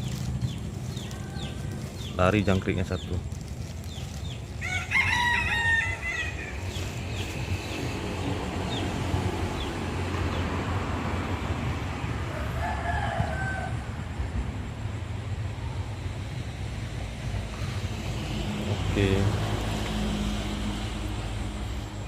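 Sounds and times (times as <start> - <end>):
rooster crowing: 0.9 - 1.8, 4.6 - 6.8, 12.2 - 14.1.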